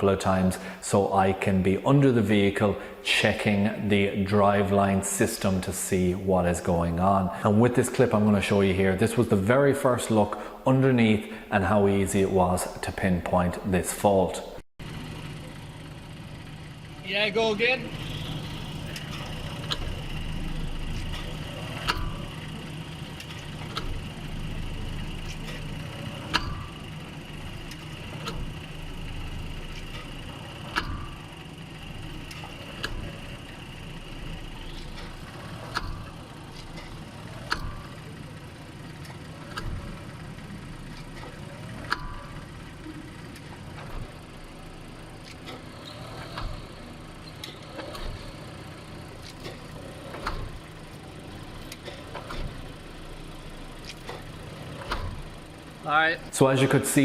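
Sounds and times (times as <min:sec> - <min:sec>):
car engine idling: 0:00.0 - 0:57.0
steady high whine: 0:00.0 - 0:57.0
driveshaft clunk: 0:14.8 - 0:57.0.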